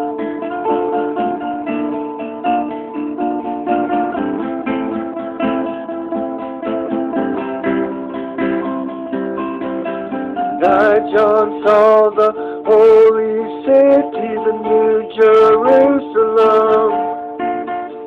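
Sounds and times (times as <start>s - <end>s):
acoustic guitar plucked and strummed: 0.0s - 18.0s
man singing: 10.5s - 17.2s.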